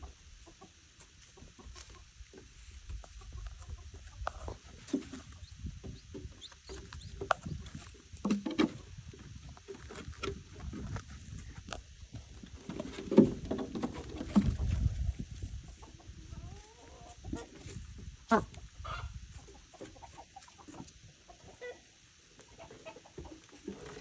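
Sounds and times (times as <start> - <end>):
birds pecking with sharp taps: 1.6 - 14.9.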